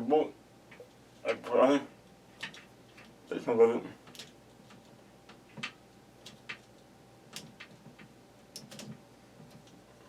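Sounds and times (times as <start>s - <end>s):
small parts clicking and tapping: 2.4s - 3.2s, 4.0s - 9.8s.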